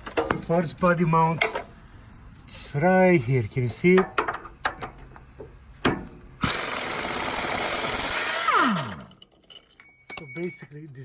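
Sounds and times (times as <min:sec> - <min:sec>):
power tool spinning: 0:06.4 - 0:09.6.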